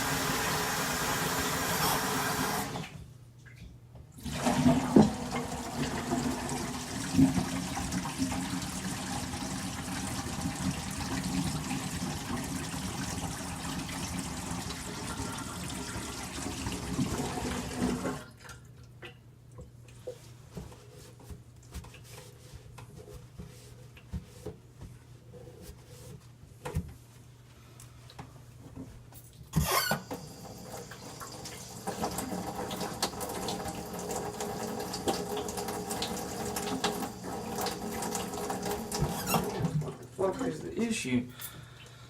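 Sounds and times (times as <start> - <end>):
water running in a sink: 0.0 - 3.0, 4.2 - 18.7, 29.6 - 40.6.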